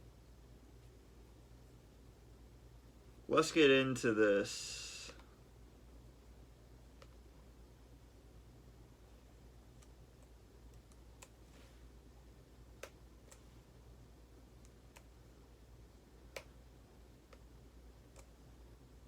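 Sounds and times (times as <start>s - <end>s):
steady low hum: 0.0s - 19.0s
faint sharp clicks: 12.8s - 13.4s, 16.3s - 16.6s, 18.1s - 18.4s.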